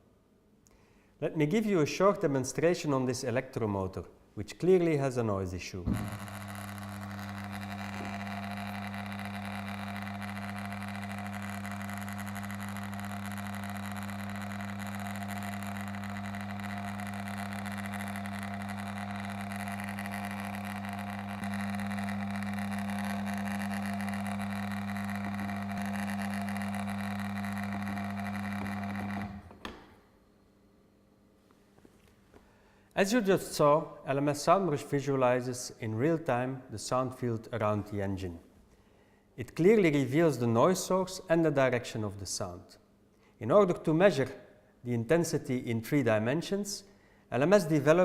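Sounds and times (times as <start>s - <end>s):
motor whine: 5.8s - 30.0s
electric motor humming: 5.9s - 29.9s.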